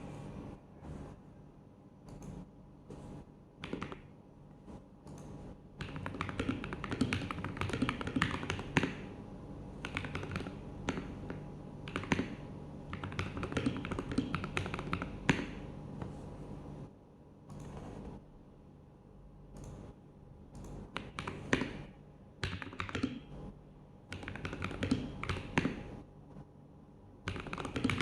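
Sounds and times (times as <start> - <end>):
mechanical keyboard typing: 3.6 - 4.0, 5.1 - 9.0, 9.8 - 15.5, 20.6 - 21.8, 22.4 - 23.3, 24.1 - 25.9, 27.2 - 28.0.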